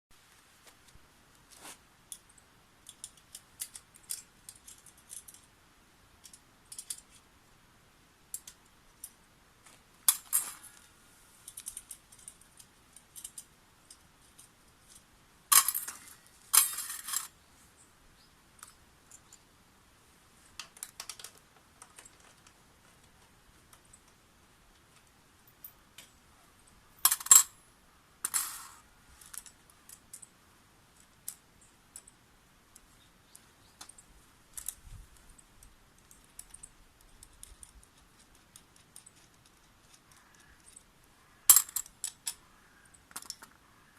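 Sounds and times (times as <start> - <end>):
metal objects clicking and clinking: 2.1 - 5.6, 6.2 - 7.3, 8.3 - 9.2, 10.0 - 17.4, 24.9 - 27.6, 28.2 - 30.4, 31.0 - 32.2, 32.8 - 43.6
metal objects clattering: 10.1 - 10.9, 11.5 - 17.3, 27.0 - 27.6, 28.2 - 30.0, 41.5 - 42.4.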